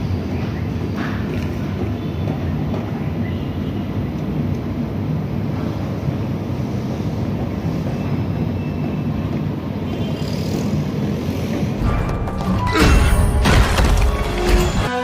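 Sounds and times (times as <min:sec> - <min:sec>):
crashing and impact effects: 0:11.8 - 0:15.0
soundtrack music: 0:11.8 - 0:15.0.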